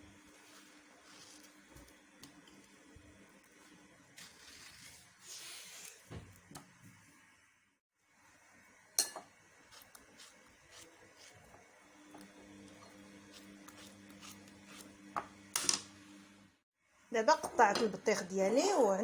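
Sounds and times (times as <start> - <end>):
blade clinking on dish: 9.0 - 9.3.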